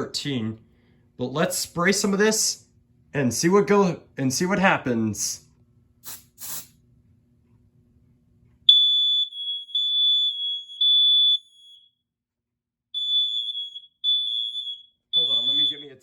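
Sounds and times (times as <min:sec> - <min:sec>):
smoke alarm beeping: 0:08.7 - 0:12.0, 0:12.9 - 0:16.0.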